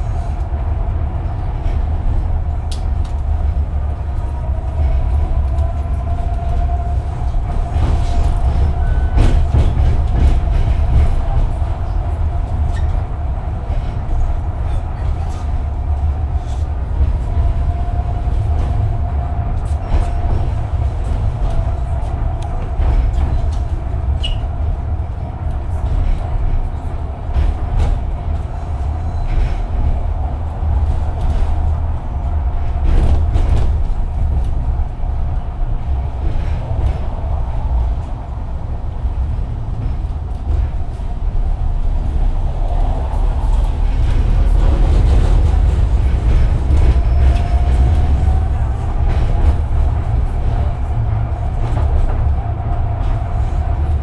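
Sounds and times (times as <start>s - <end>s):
tram rumbling on rails: 0.0s - 54.0s
tram whine: 0.0s - 54.0s.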